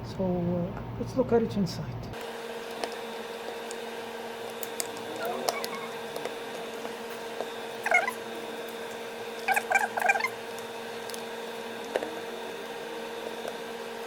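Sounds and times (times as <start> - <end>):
short high-pitched squeaks: 5.1 - 6.0, 7.8 - 8.2.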